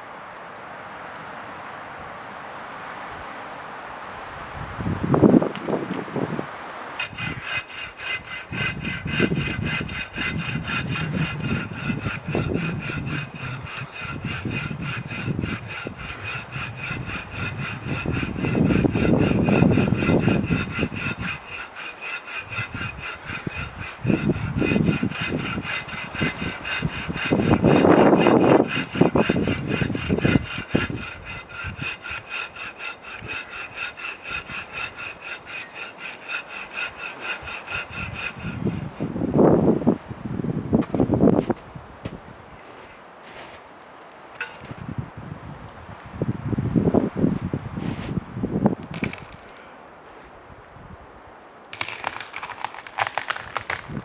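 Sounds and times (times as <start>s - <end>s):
hand saw cutting wood: 7.0s - 39.2s, 42.6s - 43.6s, 44.4s - 44.8s, 48.9s - 49.7s, 51.8s - 54.0s.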